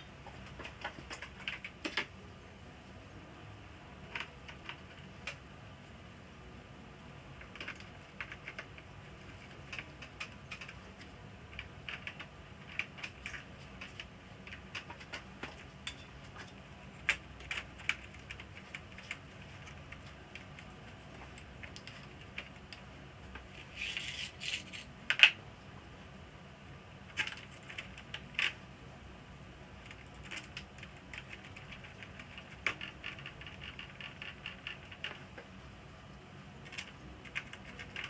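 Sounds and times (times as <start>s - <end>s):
small parts and tools clicking: 7.4s - 25.4s, 36.6s - 38.0s.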